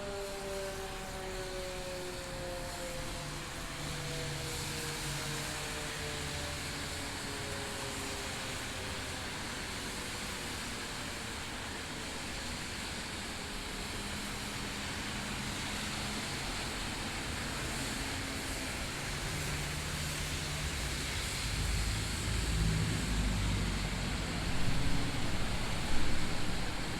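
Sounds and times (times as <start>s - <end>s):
outdoor warning siren winding down: 0.0s - 8.9s, 19.6s - 26.9s
street traffic noise: 14.2s - 26.9s
vehicle engine: 19.6s - 26.9s.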